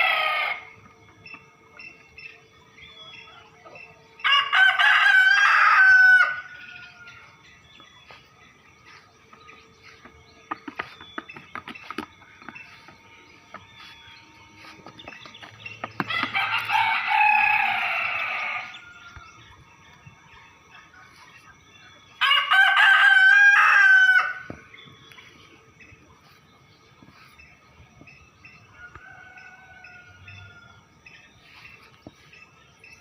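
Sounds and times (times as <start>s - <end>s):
rooster crowing: 0.0s - 0.8s, 4.2s - 7.4s, 16.0s - 19.4s, 22.2s - 24.6s, 28.7s - 30.9s.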